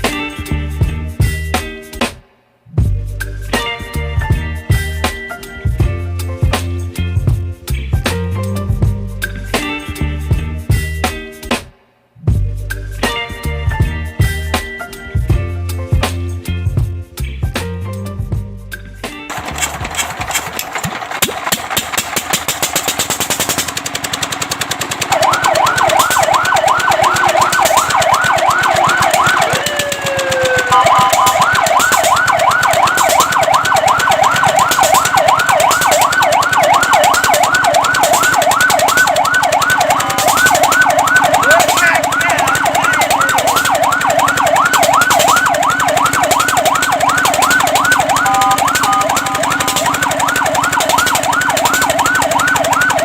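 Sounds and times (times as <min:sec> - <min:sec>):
truck engine running: 0:19.3 - 0:53.0
electronic siren yelping: 0:25.0 - 0:53.0.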